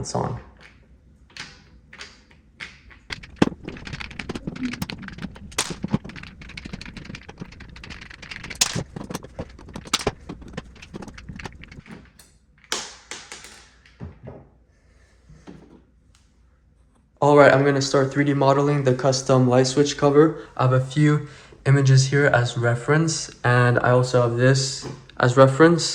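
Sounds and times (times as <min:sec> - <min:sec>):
screwdriver clicks and scrapes: 0:03.1 - 0:12.4.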